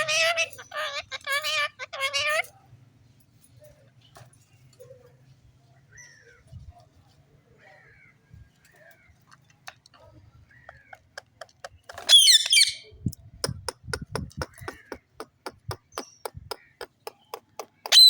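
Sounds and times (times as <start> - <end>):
parrot chirping: 0.0 - 2.5, 12.1 - 12.9
parrot squawking: 0.0 - 2.5, 12.1 - 12.8.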